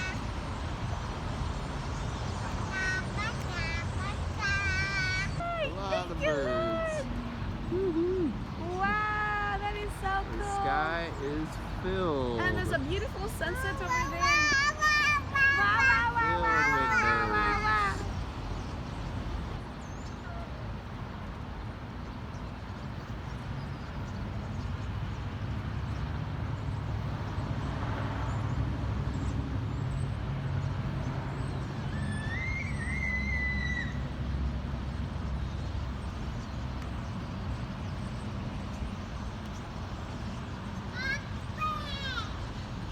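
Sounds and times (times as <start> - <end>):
flock of birds chattering: 0.0 - 20.7
freeway traffic rumble: 0.0 - 42.9
wavering bird call: 2.7 - 9.7, 12.9 - 18.3, 31.8 - 34.2.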